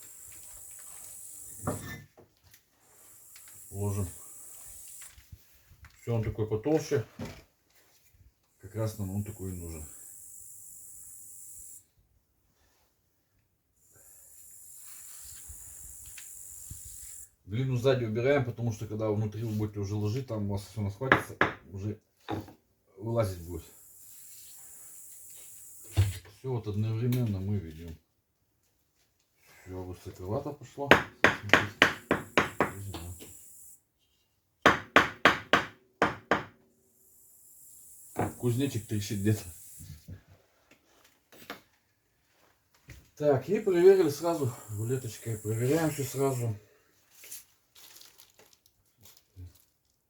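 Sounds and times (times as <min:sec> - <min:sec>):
grasshopper chirring: 0:00.0 - 0:01.7, 0:02.9 - 0:05.2, 0:09.1 - 0:11.8, 0:13.8 - 0:17.3, 0:23.7 - 0:26.0, 0:31.8 - 0:33.8, 0:36.9 - 0:39.9, 0:43.6 - 0:46.5.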